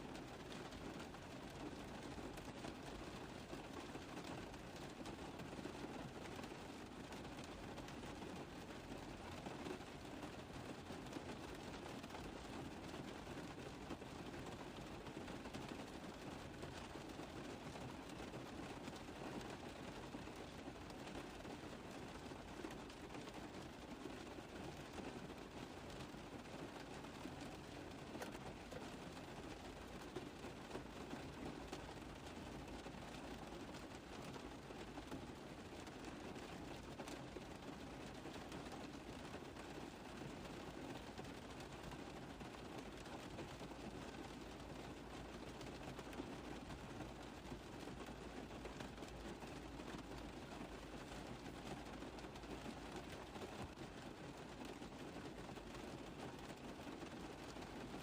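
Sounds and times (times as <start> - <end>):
rain pattering on car roof: 0.0 - 58.0.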